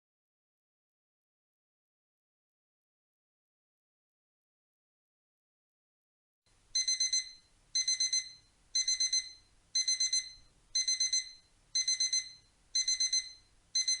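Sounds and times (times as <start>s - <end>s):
alarm clock beeping: 6.8s - 14.0s.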